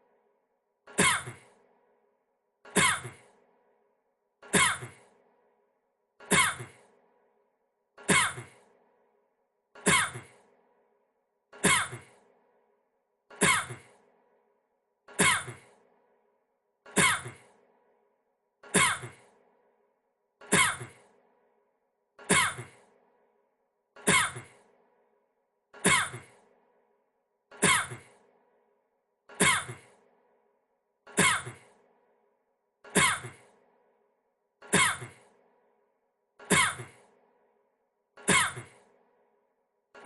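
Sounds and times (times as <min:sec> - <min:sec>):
man coughing: 0:02.7 - 0:03.2, 0:15.2 - 0:15.6.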